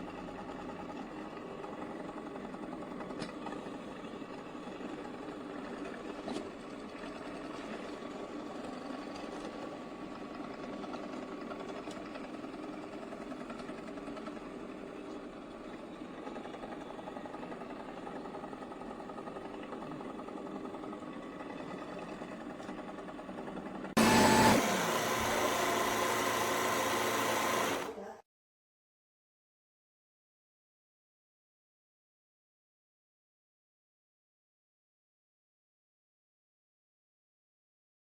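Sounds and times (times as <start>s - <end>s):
robot vacuum humming: 24.0s - 28.2s.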